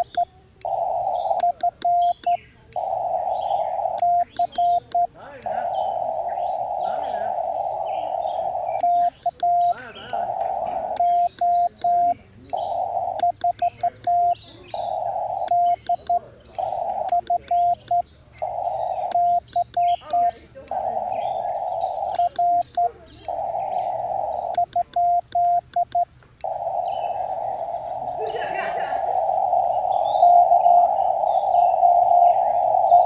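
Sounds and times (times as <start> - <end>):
morse code tone: 0.0 - 28.2, 28.9 - 33.0
birds chirping faintly: 0.0 - 33.0
radio band hiss: 0.0 - 33.0.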